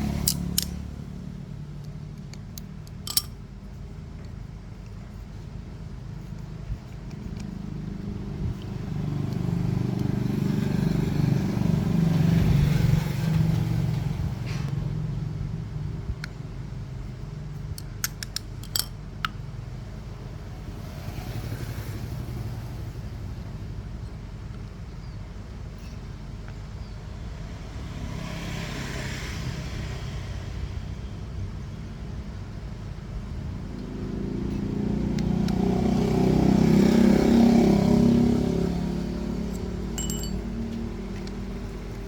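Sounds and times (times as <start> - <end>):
engine running: 0.0 - 1.9, 5.9 - 16.9, 33.2 - 42.0.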